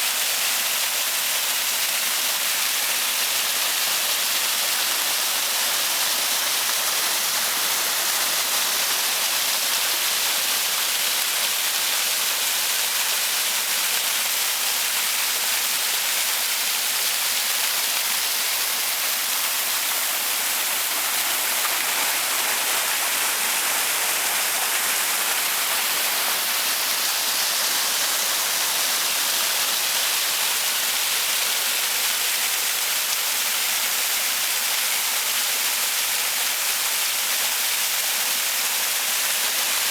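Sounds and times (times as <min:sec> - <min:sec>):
waterfall rushing: 0:03.3 - 0:13.3, 0:17.4 - 0:33.4.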